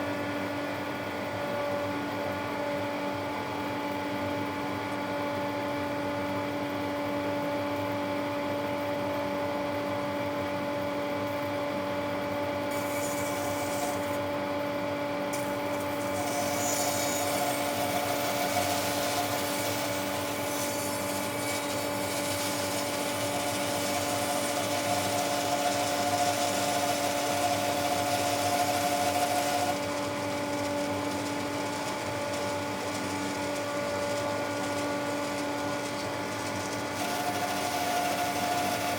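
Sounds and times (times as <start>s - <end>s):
tool cutting wood hiss: 12.7s - 14.2s, 15.3s - 29.8s, 36.9s - 38.9s
power tool humming: 15.3s - 30.0s, 36.8s - 38.9s.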